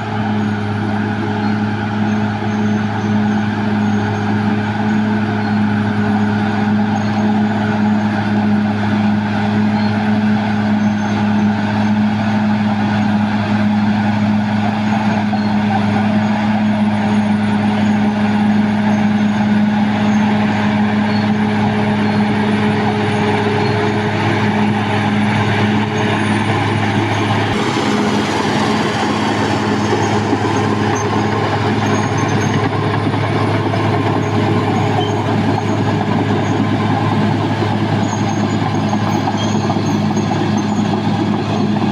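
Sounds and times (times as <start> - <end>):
bulldozer diesel engine running: 0.0 - 41.9
rough grinding noise: 18.4 - 41.9.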